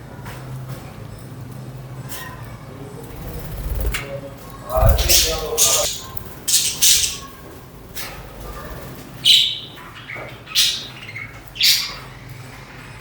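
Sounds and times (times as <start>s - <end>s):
budgerigars chirping and squawking: 4.8s - 7.4s, 8.0s - 12.2s.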